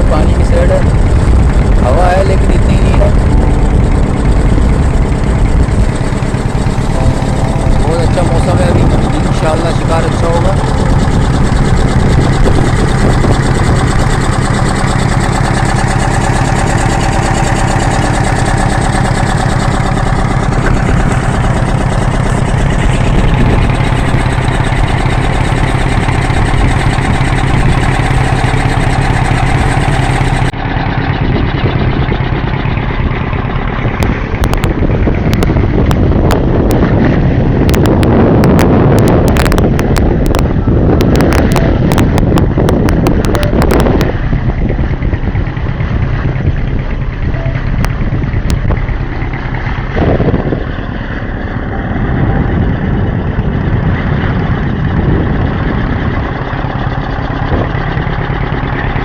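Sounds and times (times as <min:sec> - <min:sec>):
vehicle engine humming: 0:00.0 - 0:59.0
wind buffeting microphone: 0:00.0 - 0:59.0.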